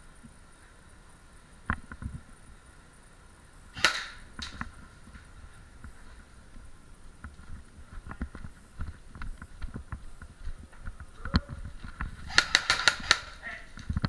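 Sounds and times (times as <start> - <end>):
sharp cracks: 3.7 - 14.0
footsteps: 3.8 - 14.0.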